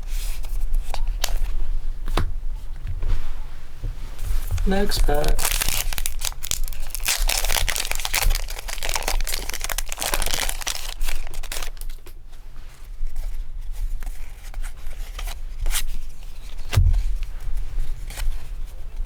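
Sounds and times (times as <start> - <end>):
cards rustling and clicking: 4.6 - 12.1
foil wrapper crinkling and tearing: 5.0 - 12.2.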